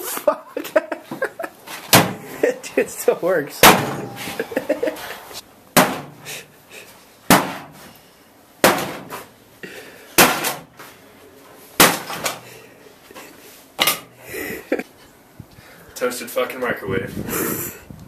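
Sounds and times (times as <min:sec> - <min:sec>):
microwave being smashed: 0:01.9 - 0:02.2, 0:03.6 - 0:04.5, 0:05.8 - 0:06.2, 0:08.6 - 0:09.2, 0:10.2 - 0:10.7, 0:11.8 - 0:12.4.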